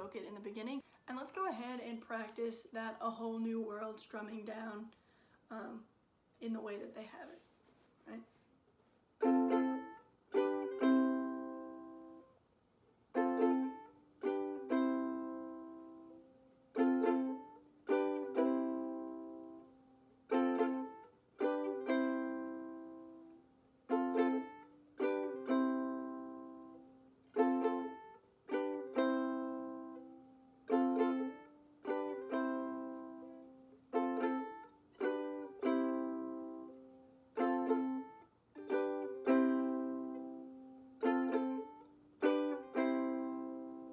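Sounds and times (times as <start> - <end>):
ukulele strums: 9.2 - 12.3, 13.1 - 43.9.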